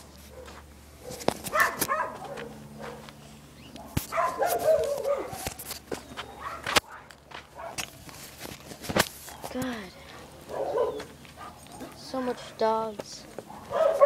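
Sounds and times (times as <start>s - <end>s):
dog barking: 0.3s - 3.2s, 3.8s - 5.5s, 6.2s - 7.8s, 10.2s - 12.6s, 13.4s - 14.0s
clicks and rustling: 1.0s - 2.5s, 3.8s - 10.2s.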